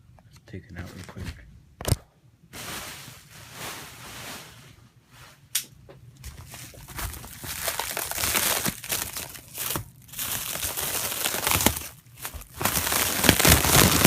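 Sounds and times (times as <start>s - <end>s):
packaging crinkling and rustling: 6.3s - 14.0s.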